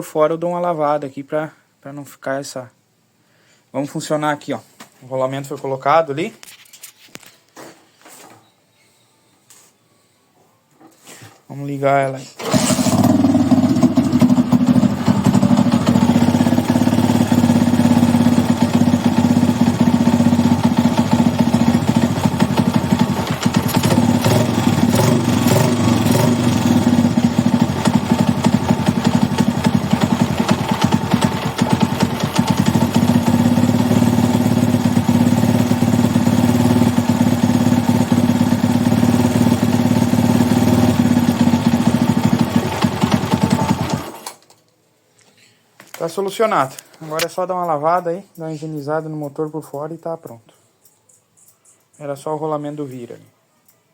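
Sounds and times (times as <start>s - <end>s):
scooter engine idling: 12.5s - 44.2s.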